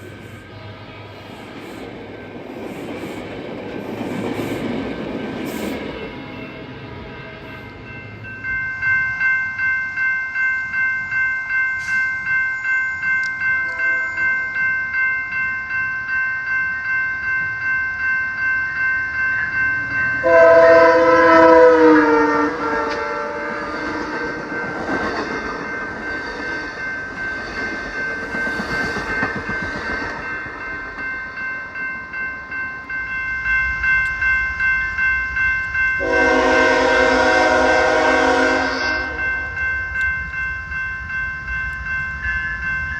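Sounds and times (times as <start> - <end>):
crossing warning bell ringing: 0.0 - 42.9
passing train rumble: 0.0 - 42.9
locomotive horn: 20.2 - 23.7, 36.0 - 39.5.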